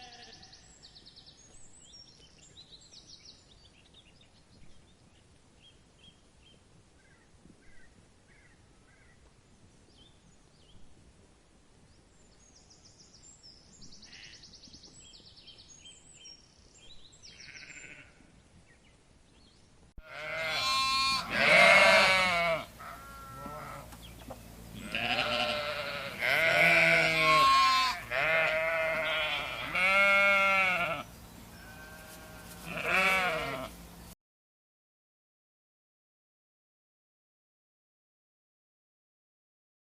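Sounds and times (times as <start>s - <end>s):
sheep bleating: 0.0s - 0.6s, 14.0s - 14.4s, 17.3s - 18.3s, 20.0s - 24.0s, 24.7s - 33.8s.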